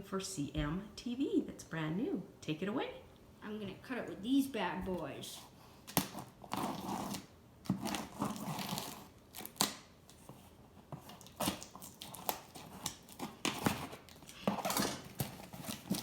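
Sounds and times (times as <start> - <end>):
packaging tearing and rustling: 5.8 - 16.0.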